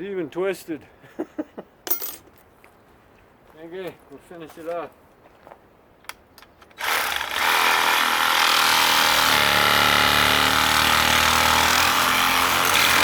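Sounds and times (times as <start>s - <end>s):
reciprocating saw cutting metal: 6.8s - 13.0s.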